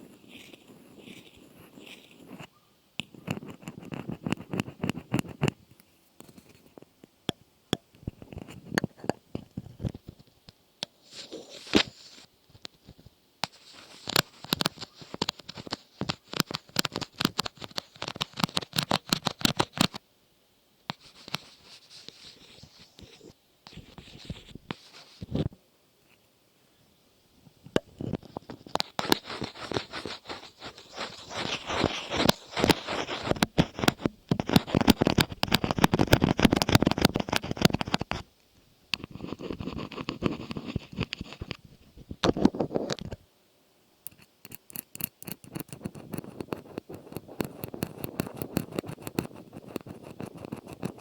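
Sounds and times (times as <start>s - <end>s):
sharp clicks and crackling taps: 13.4s - 20.0s, 30.7s - 38.2s, 44.0s - 51.0s.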